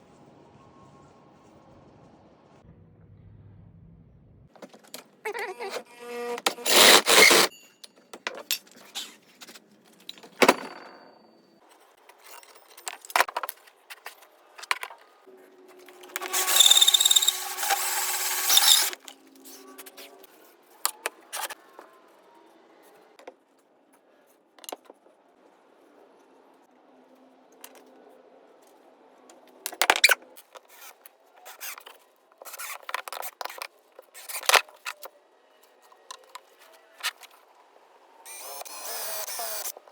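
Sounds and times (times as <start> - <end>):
loud scraping on wood: 5.3 - 7.5.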